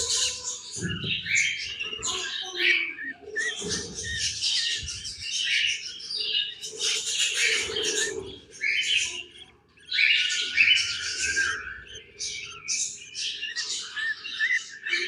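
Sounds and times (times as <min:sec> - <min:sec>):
budgie chicks chirping: 0:00.0 - 0:15.0.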